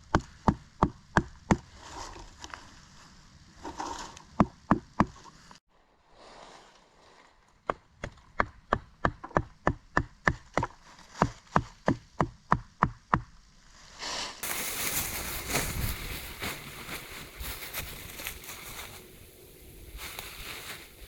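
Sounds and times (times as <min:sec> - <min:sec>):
steady rushing noise: 0:14.4 - 0:21.0.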